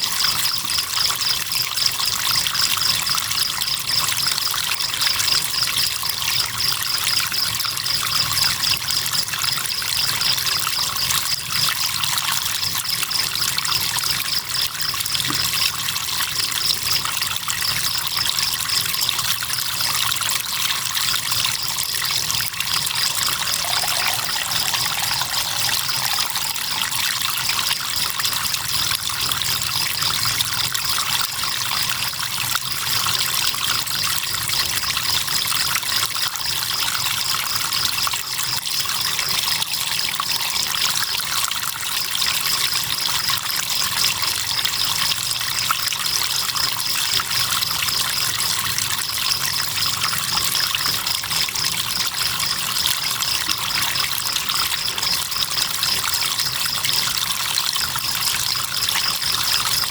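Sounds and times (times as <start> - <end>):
river water trickling: 21.6 - 28.3
crickets trilling: 22.4 - 28.0.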